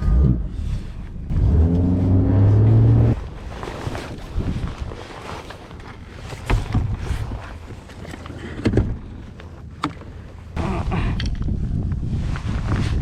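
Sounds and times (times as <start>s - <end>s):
wind: 0.0s - 13.0s
water around a boat: 2.7s - 10.7s.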